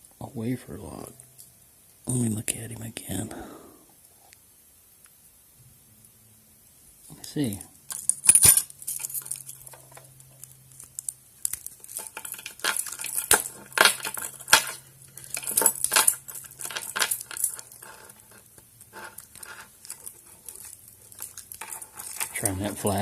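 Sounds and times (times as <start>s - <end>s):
metal clicks and scrapes in a padlock: 7.9s - 23.0s.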